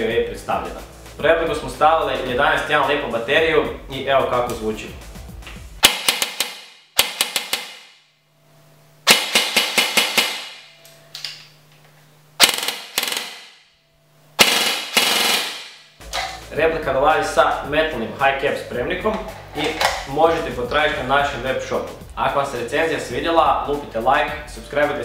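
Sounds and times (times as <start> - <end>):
airsoft gun firing bursts: 5.8 - 7.9, 9.1 - 10.6, 12.4 - 13.5, 14.4 - 15.8.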